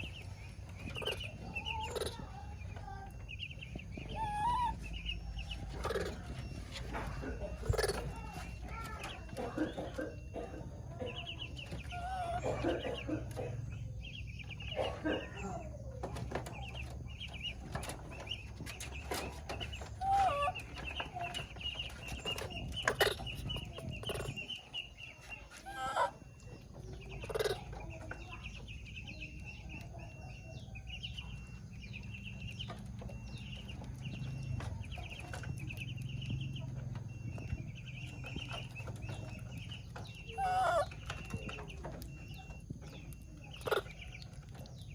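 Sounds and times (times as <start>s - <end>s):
chickens clucking: 0.0s - 44.9s
baby monkey whistling calls: 4.1s - 5.0s, 20.0s - 20.6s, 40.3s - 41.1s.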